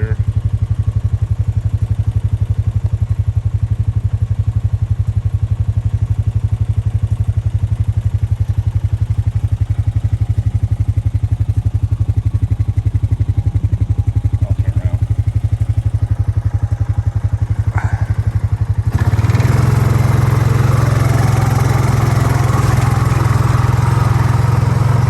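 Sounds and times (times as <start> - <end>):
vehicle engine low pulse: 9.0 - 25.0.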